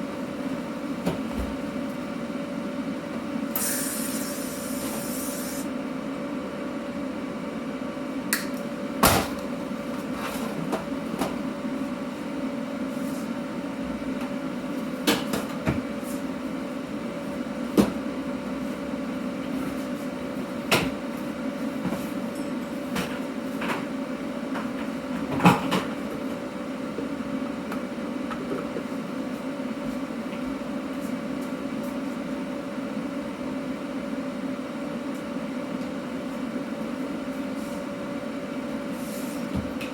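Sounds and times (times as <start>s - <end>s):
machine hum: 3.5s - 5.8s.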